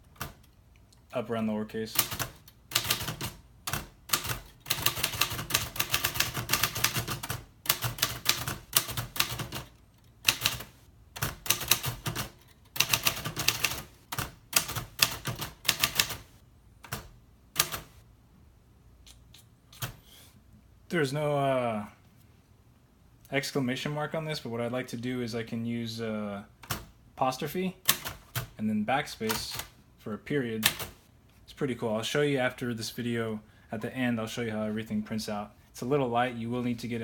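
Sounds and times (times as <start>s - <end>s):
manual typewriter keystrokes: 0.0s - 0.6s, 1.9s - 18.0s, 26.6s - 26.9s, 27.8s - 28.6s, 29.2s - 29.7s, 30.6s - 31.0s.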